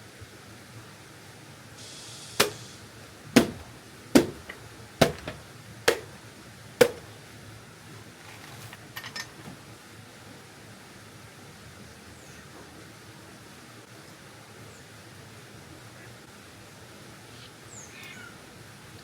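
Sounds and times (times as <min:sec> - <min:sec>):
sharp knocks on hard surface: 0:02.4 - 0:02.7, 0:03.4 - 0:06.2, 0:06.8 - 0:07.1.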